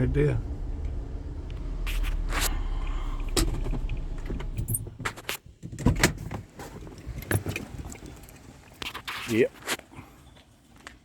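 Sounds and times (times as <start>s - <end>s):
car engine running slowly: 0.0s - 5.2s.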